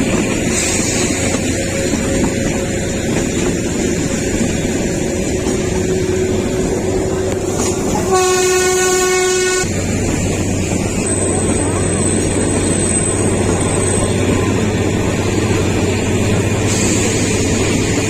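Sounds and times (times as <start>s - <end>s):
train running with steady rumble: 0.0s - 18.0s
train horn: 7.1s - 9.7s.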